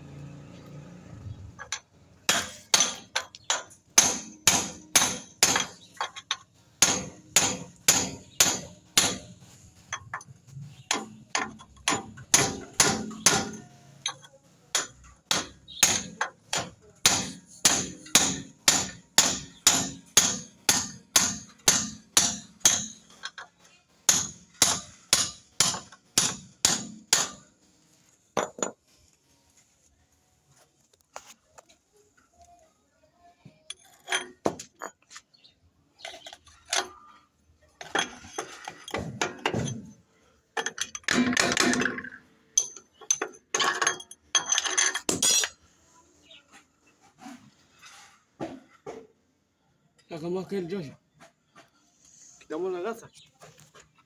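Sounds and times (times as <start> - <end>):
hammer striking metal: 2.3 - 9.4, 10.9 - 23.3, 24.1 - 27.5.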